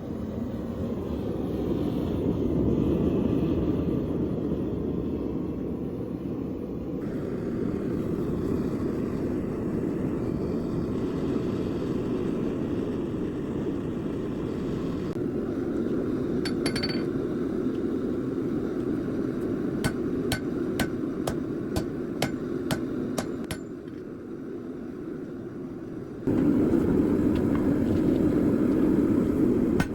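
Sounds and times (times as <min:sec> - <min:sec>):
hammer blows ringing on anvil: 0:19.8 - 0:23.8.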